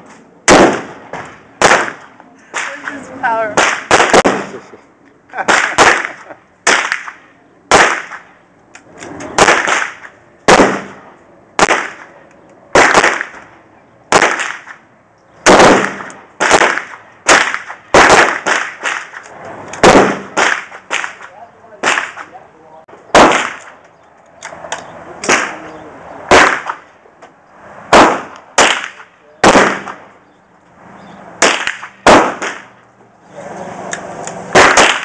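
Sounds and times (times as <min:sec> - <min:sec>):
gunshots echoing: 0:00.4 - 0:04.7, 0:05.4 - 0:08.3, 0:09.4 - 0:12.1, 0:12.7 - 0:13.5, 0:14.1 - 0:14.8, 0:15.4 - 0:19.2, 0:19.8 - 0:22.3, 0:23.1 - 0:23.8, 0:25.2 - 0:25.7, 0:26.3 - 0:27.0, 0:27.9 - 0:30.2, 0:31.4 - 0:32.8, 0:34.5 - 0:35.0.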